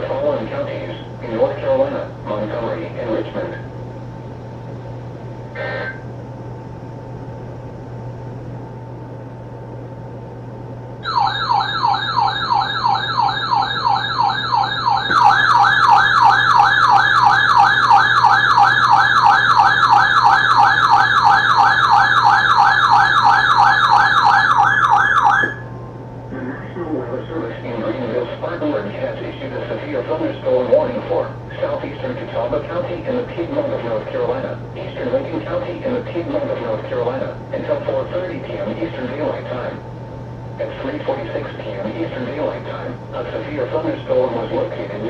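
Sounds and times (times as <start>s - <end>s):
low steady hum: 0.0s - 45.0s
electronic warbling siren: 11.0s - 25.8s.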